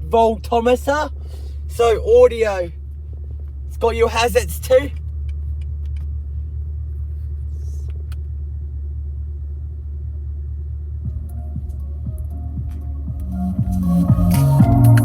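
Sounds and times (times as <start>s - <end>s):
car engine idling: 0.0s - 15.0s
music from car radio: 11.0s - 15.0s.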